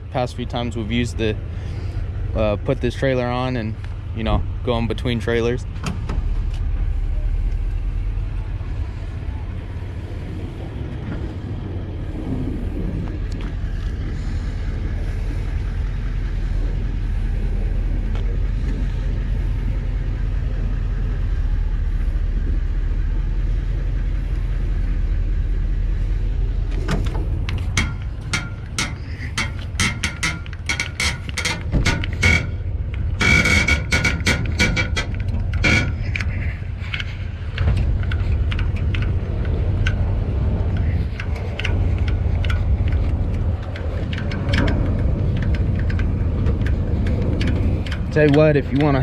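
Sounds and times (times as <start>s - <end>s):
vehicle engine rumbling: 0.0s - 49.0s
metal knocks and clanks: 4.3s - 8.0s, 26.7s - 49.0s.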